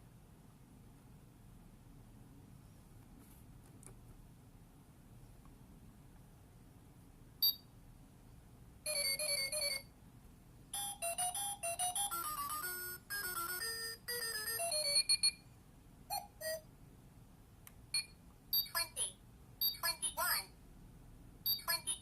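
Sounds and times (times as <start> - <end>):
alarm clock beeps: 8.9 - 9.9, 10.8 - 15.4, 16.1 - 16.6, 18.0 - 19.0, 19.6 - 20.4, 21.4 - 22.0
beeping alarm tune: 10.8 - 15.4.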